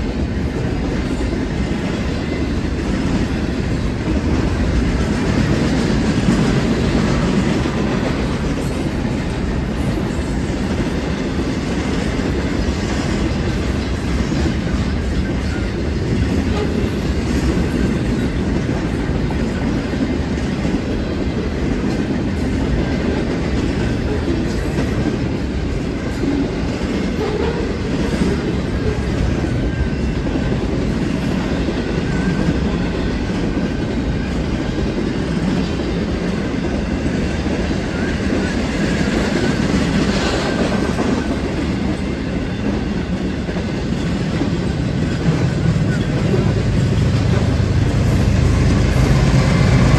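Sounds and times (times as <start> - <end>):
freight train wheels rumbling: 0.0 - 49.9.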